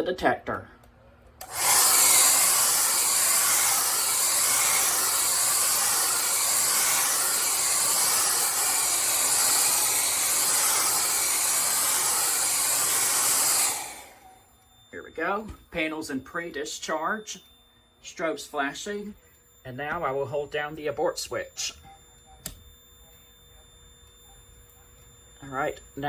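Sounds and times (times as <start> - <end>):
hair dryer blowing: 1.4 - 14.3.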